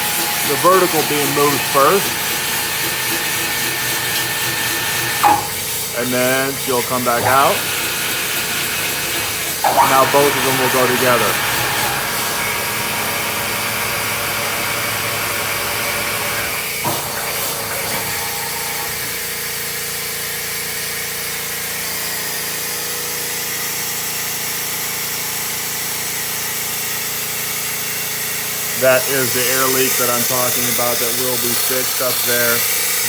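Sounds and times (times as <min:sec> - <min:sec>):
machine hum: 0:00.0 - 0:19.4
machine clunk: 0:05.0 - 0:05.9, 0:09.6 - 0:12.6.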